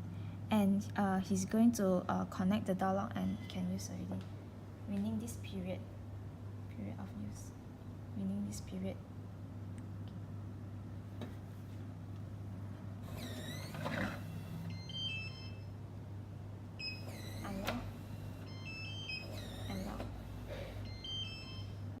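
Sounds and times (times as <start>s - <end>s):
steady low hum: 0.0s - 22.0s
door lock motor whirr: 13.0s - 15.6s, 16.8s - 21.8s.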